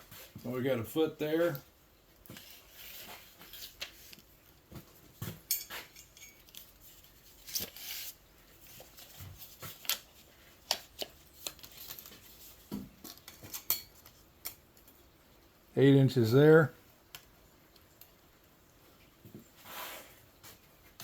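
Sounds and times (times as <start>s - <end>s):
small tools clicking and tapping: 3.4s - 7.8s, 9.5s - 15.0s.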